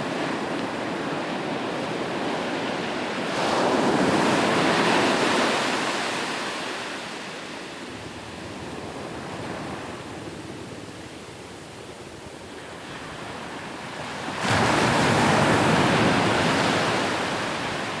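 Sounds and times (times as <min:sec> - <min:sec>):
ocean waves breaking: 0:12.8 - 0:18.0.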